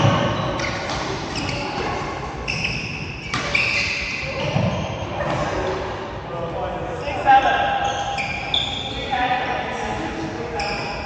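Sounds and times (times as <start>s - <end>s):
shoes squeaking on court floor: 0.0s - 5.8s, 7.7s - 9.2s, 10.5s - 11.0s.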